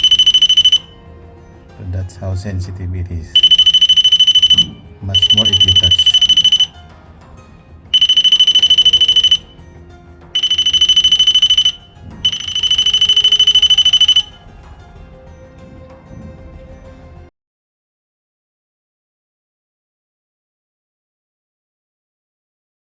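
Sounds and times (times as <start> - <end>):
rapid high-pitched alarm beeping: 0.0 - 0.9, 3.4 - 6.8, 8.0 - 9.5, 10.4 - 14.4.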